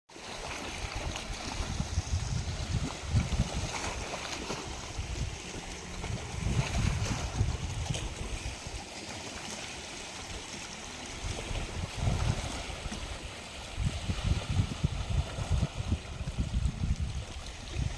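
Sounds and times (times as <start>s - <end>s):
wind buffeting microphone: 0.4s - 17.9s.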